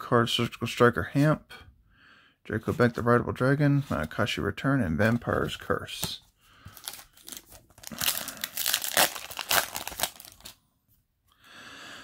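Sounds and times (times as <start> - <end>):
foil wrapper crinkling and tearing: 6.7 - 10.6.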